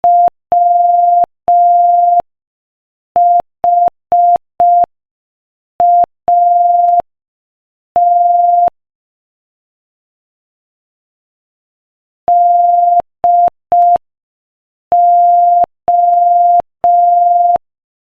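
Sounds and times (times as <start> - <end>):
morse code tone: 0.0 - 2.2, 8.0 - 8.7, 12.3 - 14.0, 15.0 - 17.6.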